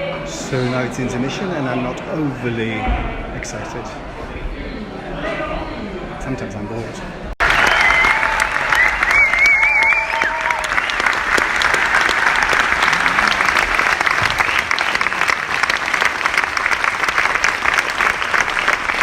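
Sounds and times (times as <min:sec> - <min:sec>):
wavering cheer: 0:07.4 - 0:17.0
audience clapping: 0:07.4 - 0:19.0.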